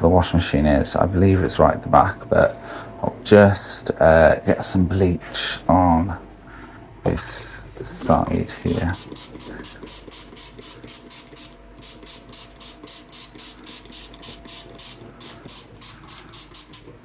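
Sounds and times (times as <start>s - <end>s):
spray bottle squirts: 9.0s - 16.9s.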